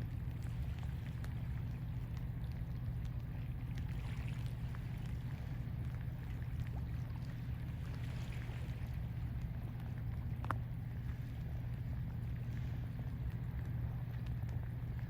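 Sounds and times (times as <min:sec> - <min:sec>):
low rumble: 0:00.0 - 0:15.0
water trickling along shore: 0:00.0 - 0:15.0
faint clicks: 0:09.4 - 0:11.2.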